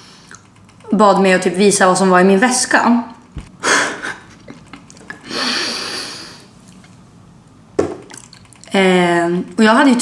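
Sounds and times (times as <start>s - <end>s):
person exhaling: 5.2s - 6.5s.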